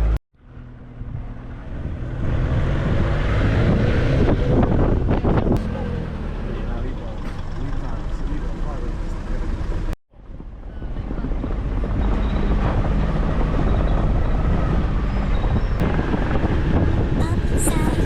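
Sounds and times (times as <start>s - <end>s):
vehicle engine rumble: 0.0s - 18.0s
wind on microphone: 0.9s - 5.6s, 10.2s - 18.0s.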